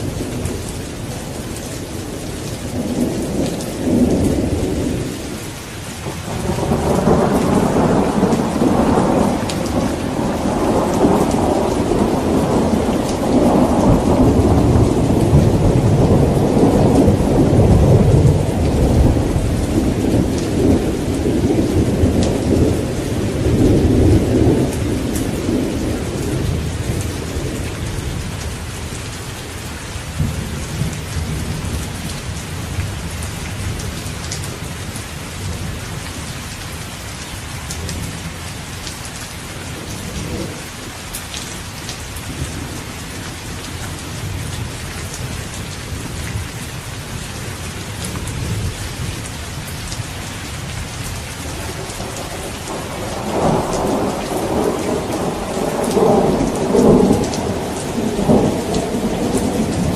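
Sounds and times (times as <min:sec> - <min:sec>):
thunder rumbling: 0:00.0 - 0:29.0, 0:41.8 - 0:59.9
steady rain falling: 0:00.0 - 0:59.9.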